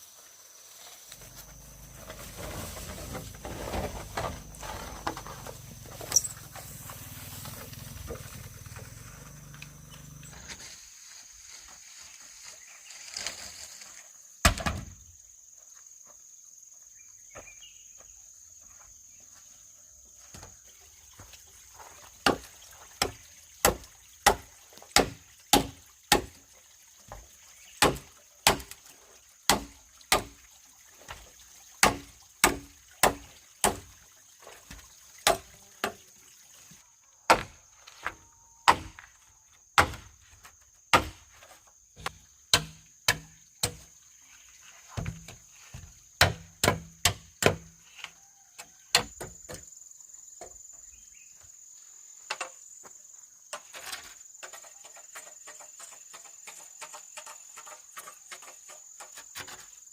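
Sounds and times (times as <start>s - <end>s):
crickets trilling: 0.0s - 59.9s
chopping blows on wood: 22.2s - 26.4s, 27.8s - 28.8s, 29.5s - 30.4s, 31.8s - 33.8s, 37.3s - 37.6s, 38.7s - 39.1s, 39.8s - 40.2s, 40.9s - 41.3s, 42.0s - 43.8s, 46.2s - 47.8s.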